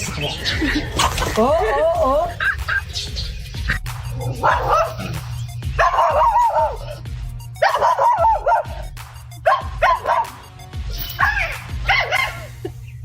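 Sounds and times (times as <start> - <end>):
background music: 0.0 - 13.0
dog yapping: 3.7 - 7.0, 7.6 - 10.4, 11.0 - 12.5.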